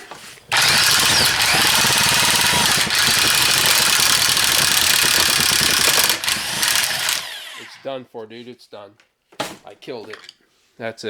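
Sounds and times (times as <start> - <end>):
ratchet mechanism chattering: 0.5 - 7.8
power tool running: 0.5 - 7.9.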